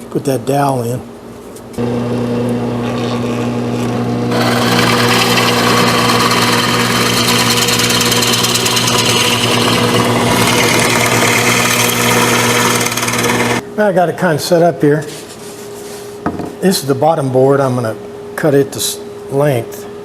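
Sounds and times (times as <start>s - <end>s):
drill bit cutting into wood: 1.8s - 13.6s
electric drill motor hum: 1.8s - 13.6s.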